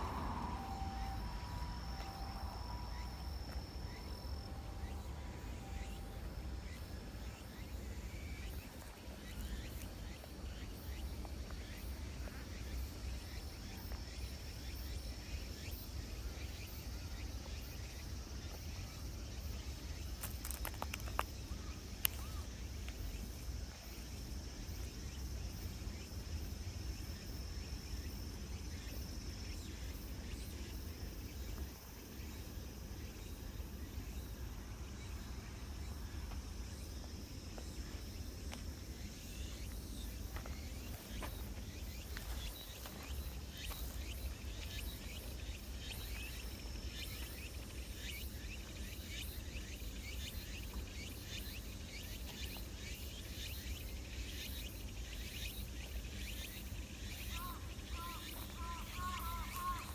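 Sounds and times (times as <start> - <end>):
low rumble: 0.0 - 6.2
high insect trill: 0.0 - 59.9.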